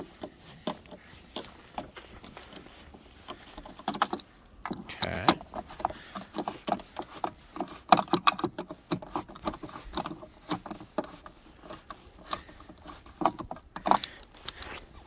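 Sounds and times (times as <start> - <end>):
plastic and metal clicks and knocks: 3.7 - 11.2, 12.2 - 14.5.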